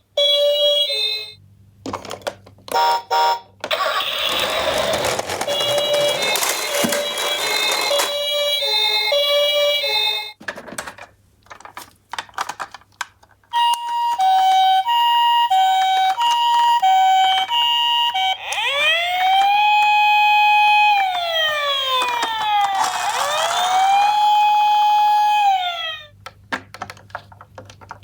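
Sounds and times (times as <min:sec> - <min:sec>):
toy electronic siren: 0:02.8 - 0:09.8, 0:13.6 - 0:26.2.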